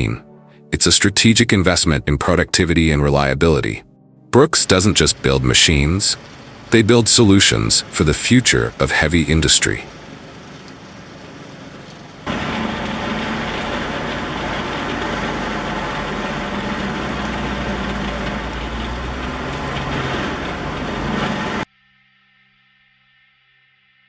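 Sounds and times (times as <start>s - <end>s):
faint steady tones: 0.0s - 21.7s
heavy machine engine running: 4.4s - 21.7s.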